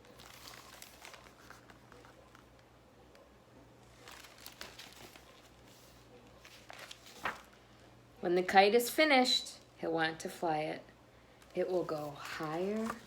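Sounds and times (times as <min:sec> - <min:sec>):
book pages rustling: 0:00.0 - 0:02.6, 0:03.8 - 0:07.6, 0:11.4 - 0:13.0
low room hum: 0:00.0 - 0:13.0.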